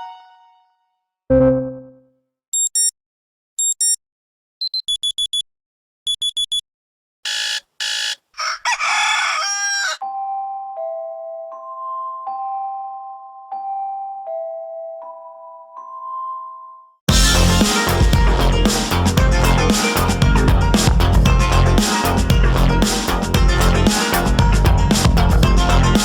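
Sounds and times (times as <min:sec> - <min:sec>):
high beeps: 0:01.3 - 0:02.0, 0:02.6 - 0:02.9, 0:04.6 - 0:05.4, 0:06.1 - 0:06.6
rooster crow sound effect: 0:07.4 - 0:10.0.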